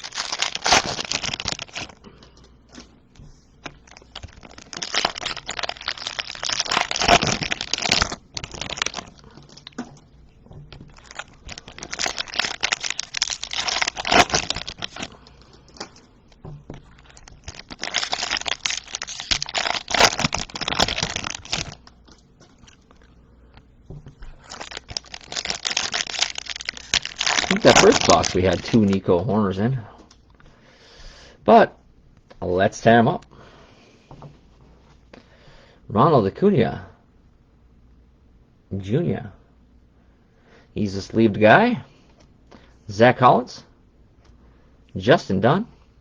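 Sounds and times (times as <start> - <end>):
card pack wrappers crinkling: 0.0 - 2.9, 3.6 - 10.0, 10.6 - 23.1, 24.2 - 29.1.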